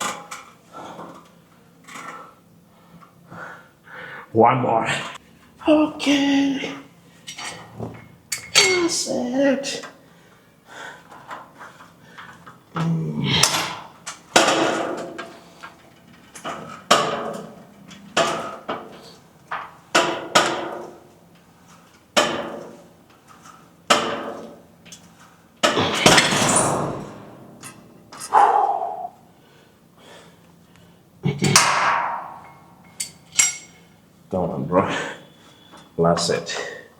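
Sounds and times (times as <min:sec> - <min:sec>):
weights clattering: 0:13.4 - 0:21.0, 0:31.3 - 0:33.9
gym weights clanking: 0:31.4 - 0:33.9.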